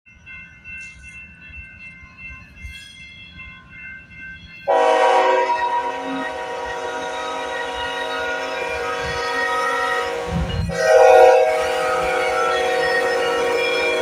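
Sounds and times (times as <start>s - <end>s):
locomotive horn chord: 4.7s - 14.0s.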